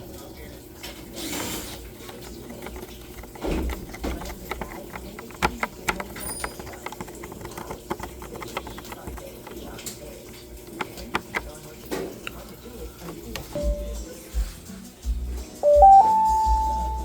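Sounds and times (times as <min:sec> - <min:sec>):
screwdriver clicking and clattering: 0:02.1 - 0:13.6.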